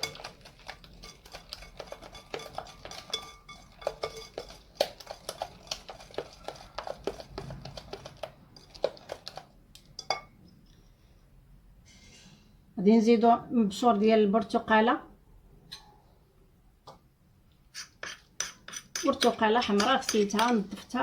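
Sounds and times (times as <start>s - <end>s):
metal utensil tapping a bowl: 1.0s - 4.6s, 10.0s - 10.3s, 18.0s - 20.9s.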